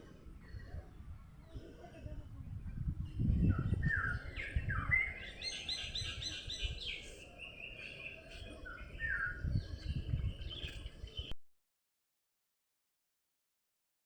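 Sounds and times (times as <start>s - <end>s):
bird singing: 2.8s - 11.4s.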